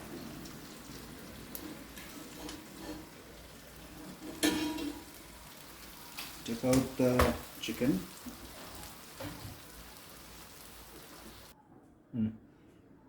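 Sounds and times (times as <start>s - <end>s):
chicken sizzling and spitting: 0.0s - 11.5s.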